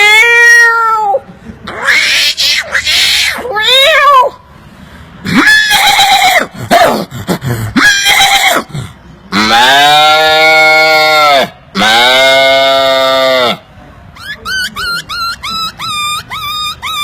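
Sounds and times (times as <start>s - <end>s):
man imitating animal calls: 5.3s - 13.6s, 14.2s - 17.0s.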